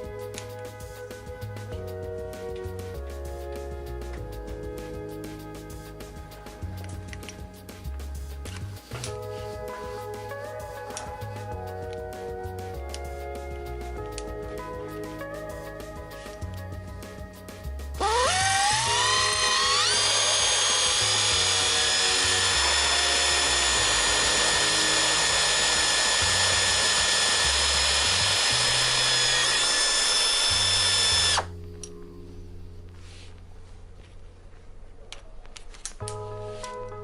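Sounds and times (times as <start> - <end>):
background music: 0.0 - 35.2, 35.8 - 37.0
pneumatic drill whine: 18.0 - 31.5.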